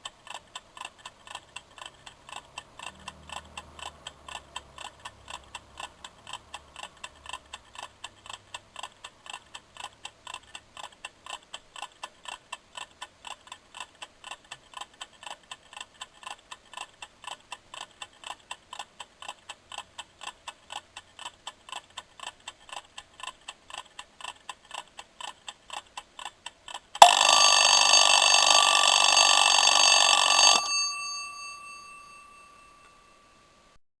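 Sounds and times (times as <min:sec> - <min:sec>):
kitchen timer ticking: 0:00.0 - 0:26.0, 0:27.0 - 0:33.5
timer bell ringing: 0:27.0 - 0:33.8.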